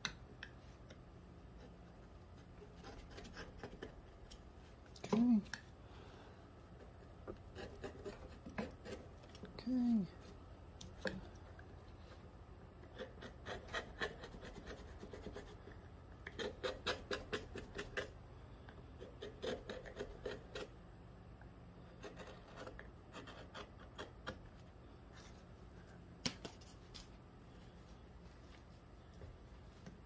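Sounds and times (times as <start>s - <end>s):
carving tool scraping bark: 2.6s - 4.2s, 6.8s - 9.2s, 12.8s - 18.2s, 19.0s - 20.7s, 22.0s - 24.4s.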